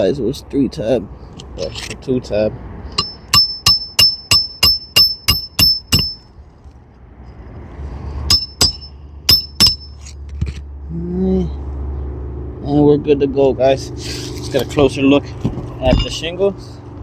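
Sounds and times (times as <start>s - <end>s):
hammer striking nail: 3.0s - 6.2s, 8.3s - 9.9s.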